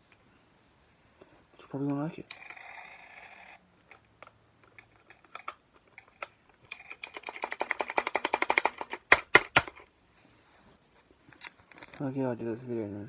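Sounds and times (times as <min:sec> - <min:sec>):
fast run of sharp clicks: 0:04.7 - 0:09.8.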